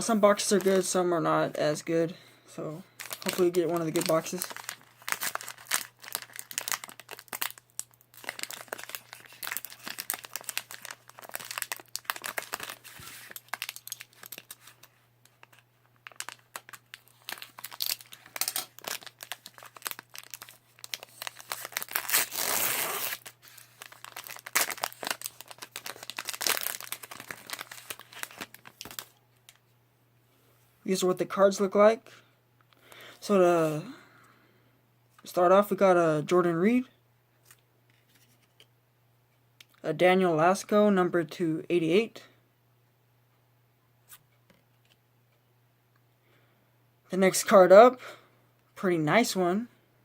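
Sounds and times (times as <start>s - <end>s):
faint electrical hum: 0.0s - 50.0s
plastic wrapping crinkling: 2.9s - 29.6s
plastic wrapping ripping: 3.0s - 29.2s.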